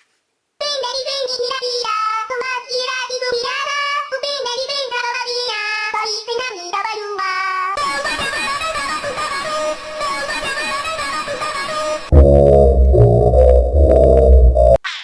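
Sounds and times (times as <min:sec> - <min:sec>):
high childlike voice singing: 0:00.6 - 0:10.4.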